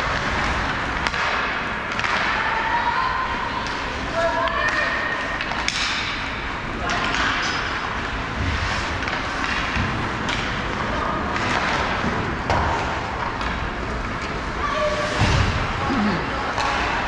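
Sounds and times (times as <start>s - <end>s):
hockey stick and puck clacks: 0.0s - 2.7s, 3.6s - 14.4s.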